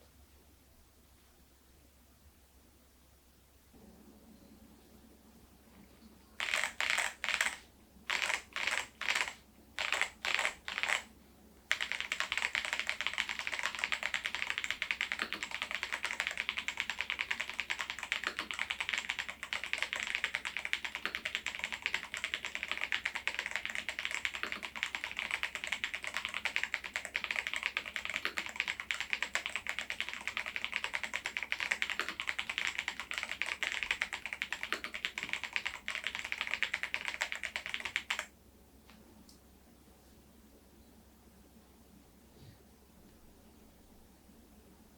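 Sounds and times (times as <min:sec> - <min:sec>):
mechanical keyboard typing: 0:06.4 - 0:11.1, 0:11.7 - 0:38.3.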